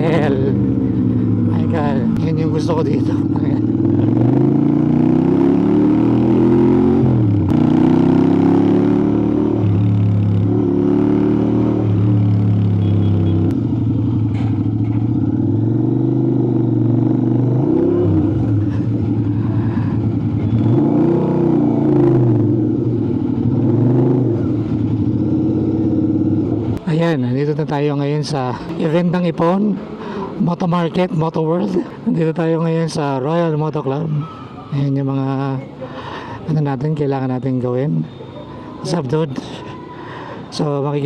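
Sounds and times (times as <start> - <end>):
motorcycle exhaust revving: 0.0 - 26.8.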